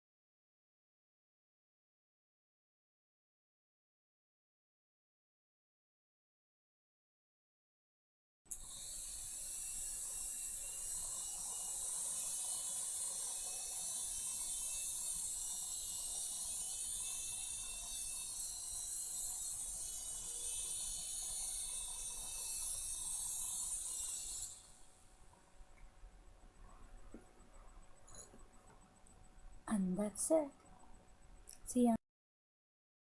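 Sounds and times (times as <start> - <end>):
mini helicopter rotors whirring: 8.5 - 31.9.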